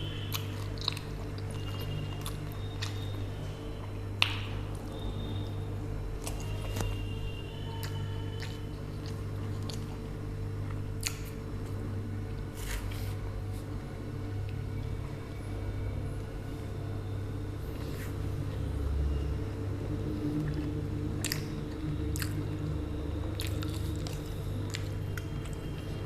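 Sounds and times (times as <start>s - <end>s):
steady low hum: 0.0s - 26.0s
wet chewing and biting: 0.3s - 3.2s, 7.8s - 10.0s, 10.6s - 11.8s, 20.2s - 22.6s, 23.3s - 25.9s.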